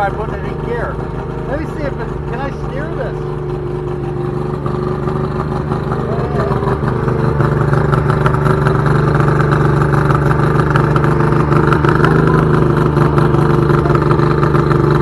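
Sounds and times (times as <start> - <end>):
outboard motor idling: 0.0 - 15.0.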